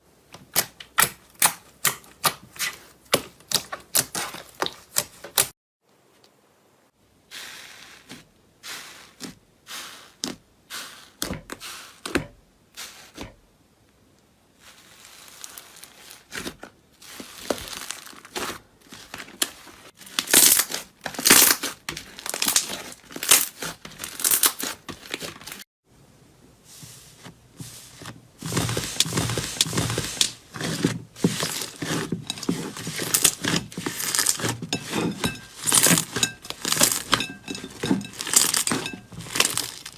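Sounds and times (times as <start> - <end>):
slime popping and crackling: 20.0 - 25.6, 28.5 - 39.9.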